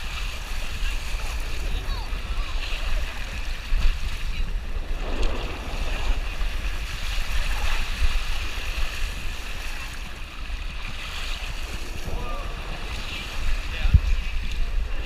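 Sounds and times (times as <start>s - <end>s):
rushing outdoor noise: 0.0s - 15.0s
wind buffeting microphone: 0.0s - 15.0s.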